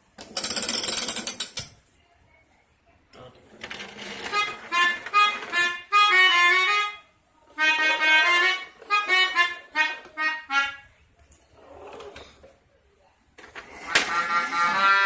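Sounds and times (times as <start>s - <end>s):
melodica playing short notes: 4.2s - 7.0s, 7.6s - 10.8s, 13.9s - 15.0s.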